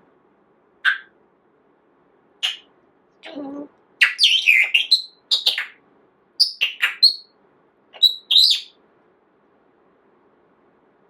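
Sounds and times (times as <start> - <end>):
parrot chirps and whistles: 0.8 - 1.1, 2.4 - 3.4, 4.0 - 5.8, 6.4 - 7.4, 8.0 - 8.8.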